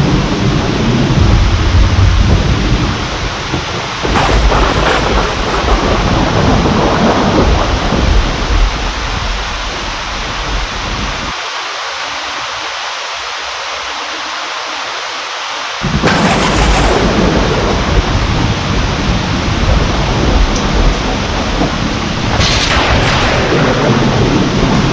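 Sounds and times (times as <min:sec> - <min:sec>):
thunderclap: 0:00.0 - 0:10.6, 0:15.8 - 0:24.9
thunder rumbling: 0:00.0 - 0:11.3, 0:15.8 - 0:24.9
heavy rain falling: 0:00.0 - 0:24.9.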